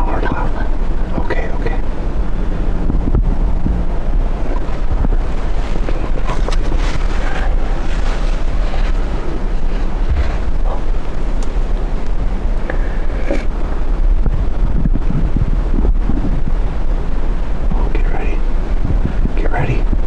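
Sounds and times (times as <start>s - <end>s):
faint rustles: 0.0s - 15.4s
wind buffeting microphone: 0.0s - 20.0s.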